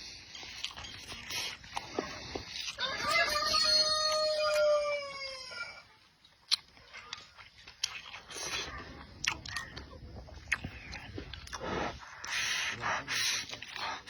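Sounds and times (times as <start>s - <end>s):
rooster crowing: 2.8s - 5.8s.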